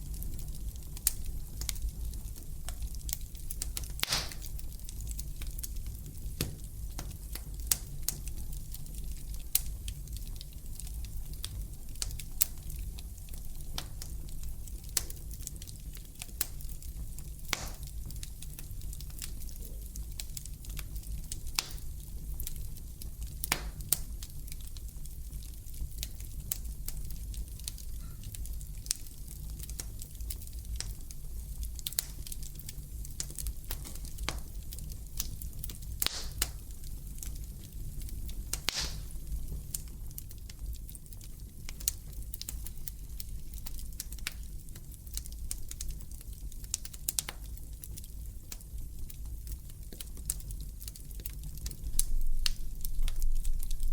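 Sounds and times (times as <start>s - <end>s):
wood fire crackling: 0.0s - 53.9s.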